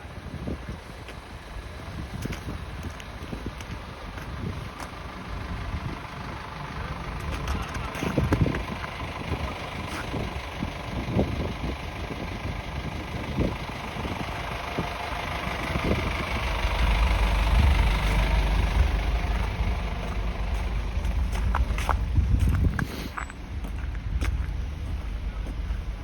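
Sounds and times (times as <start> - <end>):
vehicle engine running: 0.0 - 26.0
footsteps in snow: 19.3 - 25.9.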